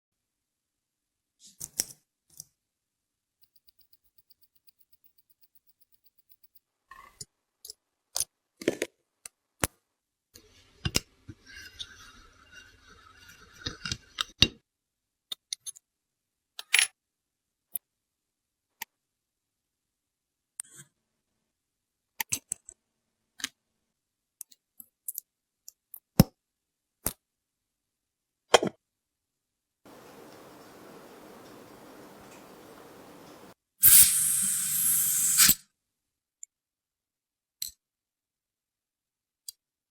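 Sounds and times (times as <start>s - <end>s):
watch parts and tools clicking: 3.4s - 6.6s.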